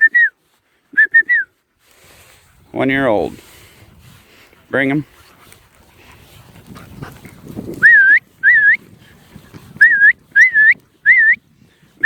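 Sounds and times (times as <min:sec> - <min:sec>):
short whistle commands: 0:00.0 - 0:01.5, 0:07.8 - 0:08.8, 0:09.8 - 0:11.4.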